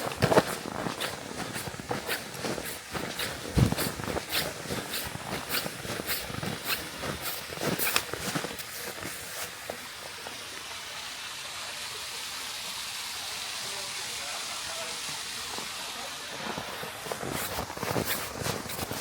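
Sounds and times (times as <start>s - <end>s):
footsteps in snow: 0.0s - 10.0s, 16.4s - 19.0s
steady hiss: 0.0s - 19.0s.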